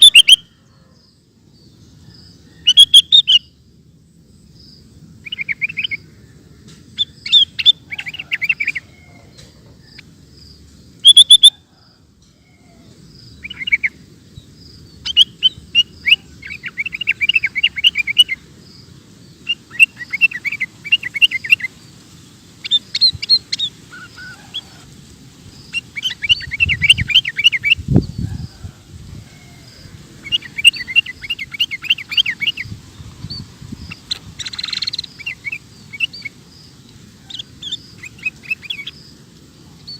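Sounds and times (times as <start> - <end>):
bird singing chirping notes: 0.0 - 0.6, 1.6 - 3.6, 5.2 - 6.3, 10.9 - 11.6, 13.2 - 18.4, 19.3 - 22.0, 25.5 - 28.3, 29.8 - 39.2.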